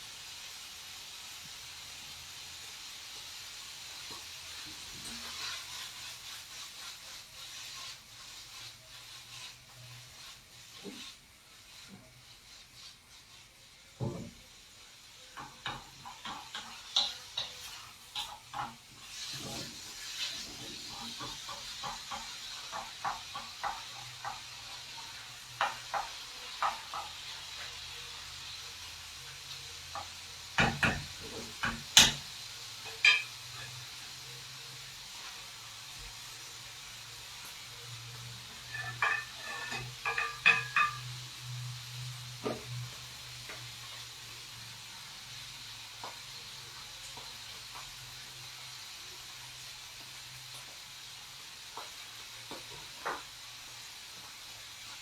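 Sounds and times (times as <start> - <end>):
food sizzling in a frying pan: 0.0 - 55.0
utensil scraping a pan: 4.1 - 14.4, 15.2 - 28.1, 29.5 - 34.4, 38.1 - 43.7.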